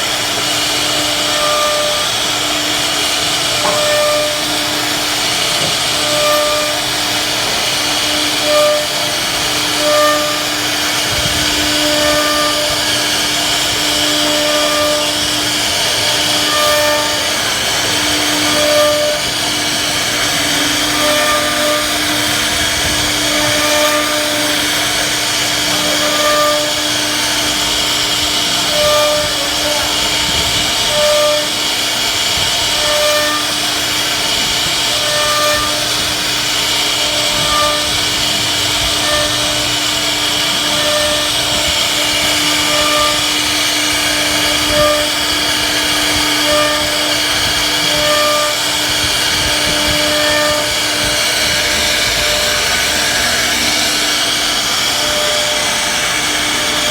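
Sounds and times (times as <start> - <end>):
wood router whirring: 0.0 - 56.9.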